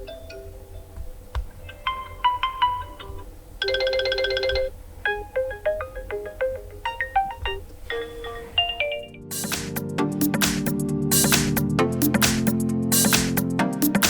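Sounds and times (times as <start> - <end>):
chime-like ringtone melody: 1.8 - 9.5.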